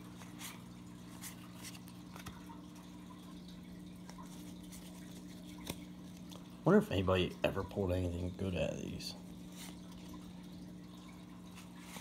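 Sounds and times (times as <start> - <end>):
low electrical hum: 0.0 - 12.0
trading cards being flipped: 4.1 - 6.4.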